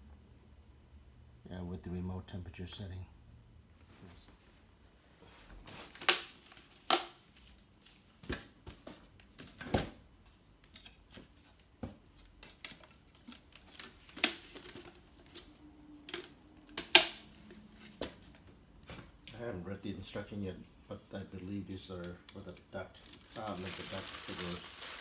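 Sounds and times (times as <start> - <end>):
packaging clacks and knocks: 23.0 - 25.0.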